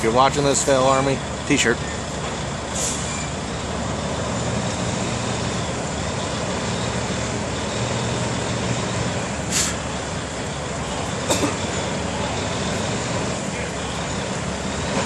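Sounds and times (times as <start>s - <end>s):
diesel truck engine running: 0.0s - 15.0s
short air hisses: 2.7s - 3.3s, 9.5s - 9.9s.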